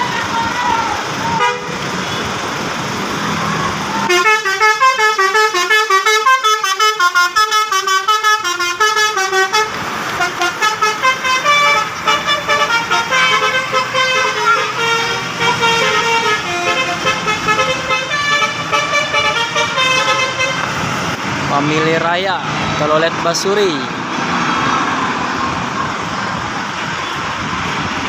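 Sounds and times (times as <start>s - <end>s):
bus horn playing a tune: 1.3s - 2.4s, 4.0s - 20.7s.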